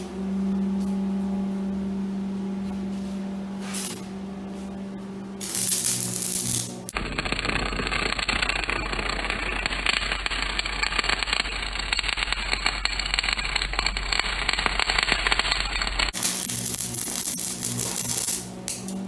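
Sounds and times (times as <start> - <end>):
steady low hum: 0.0 - 19.0
welding arc crackling: 3.7 - 4.0, 5.4 - 19.0.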